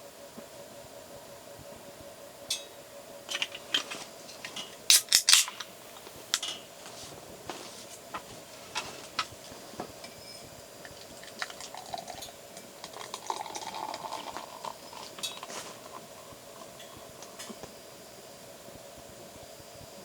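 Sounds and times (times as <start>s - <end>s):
steady low hum: 0.0s - 20.0s
metal utensils clinking against dishes: 2.5s - 5.7s, 6.4s - 6.7s, 13.3s - 16.0s.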